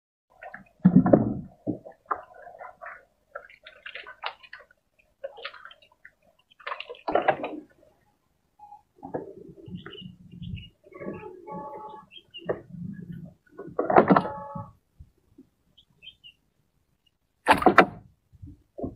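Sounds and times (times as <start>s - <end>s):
heavy water splashes: 0.3s - 8.0s
water splashing and sloshing: 0.3s - 18.9s.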